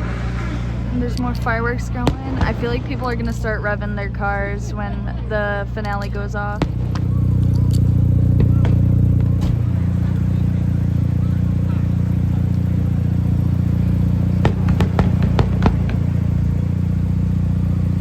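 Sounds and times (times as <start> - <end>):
car engines idling: 0.0 - 18.0
firework cracks: 5.8 - 18.0.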